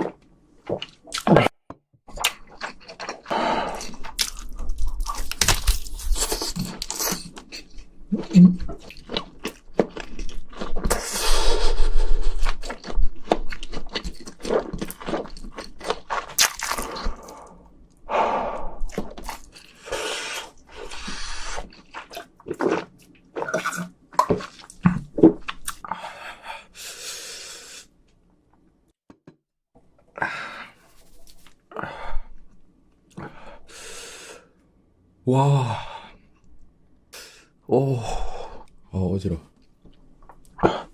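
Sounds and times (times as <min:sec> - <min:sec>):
chewing and crunching: 0:02.1 - 0:11.2, 0:12.2 - 0:18.0, 0:18.8 - 0:26.0
sharp gasping breaths: 0:25.9 - 0:27.9.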